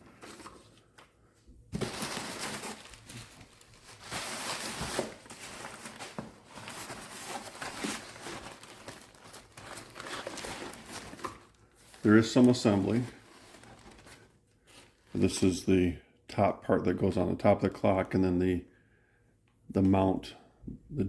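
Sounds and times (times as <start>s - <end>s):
packing material rustling and crinkling: 0.0s - 15.5s.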